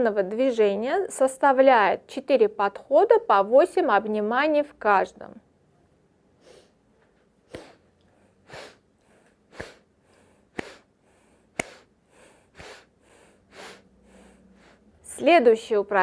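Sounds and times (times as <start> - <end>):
person sniffing through nose: 6.4 - 6.8, 7.5 - 14.9.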